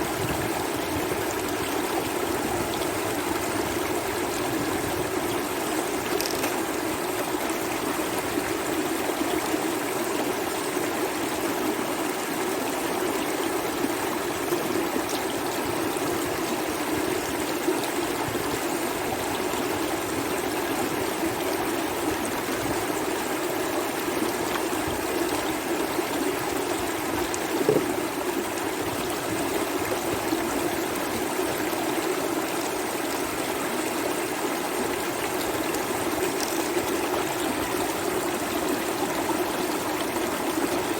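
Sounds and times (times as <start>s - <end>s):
brief knock: 27.6s - 28.0s.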